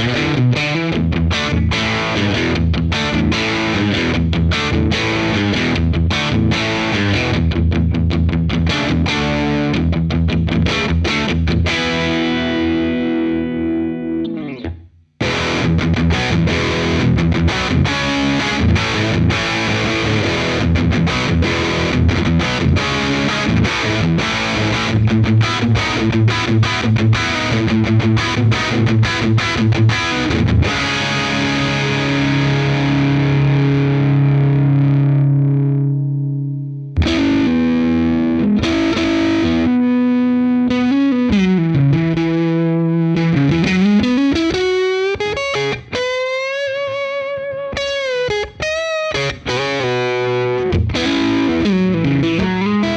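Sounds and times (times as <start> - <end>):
distorted electric guitar: 0.0 - 52.9.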